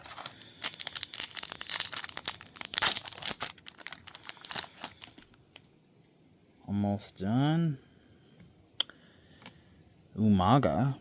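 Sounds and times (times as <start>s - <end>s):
foil wrapper tearing and crinkling: 0.0s - 5.4s.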